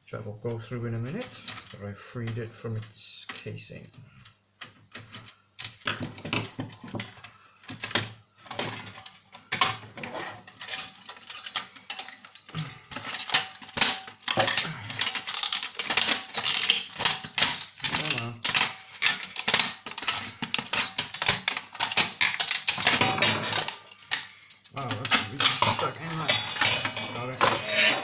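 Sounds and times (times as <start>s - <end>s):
plastic and metal parts clicking: 10.4s - 28.0s.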